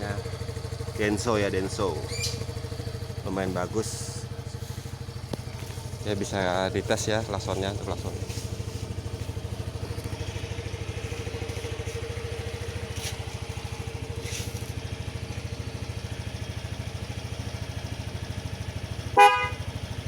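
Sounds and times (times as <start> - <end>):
scooter engine idling: 0.0 - 20.0
scooter horn blast: 19.0 - 20.0.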